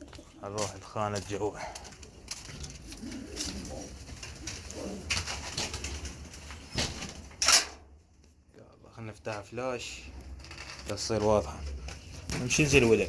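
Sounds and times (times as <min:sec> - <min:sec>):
movement noises: 0:00.0 - 0:07.5
pigeons cooing: 0:01.6 - 0:07.1.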